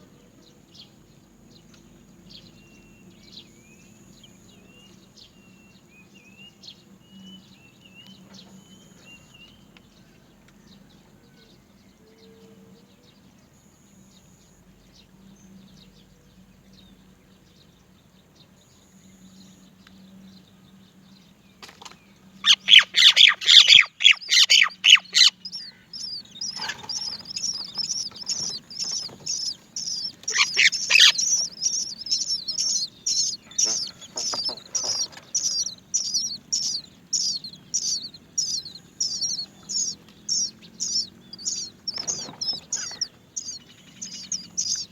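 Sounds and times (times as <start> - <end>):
bird nestlings begging calls: 22.4 - 44.9.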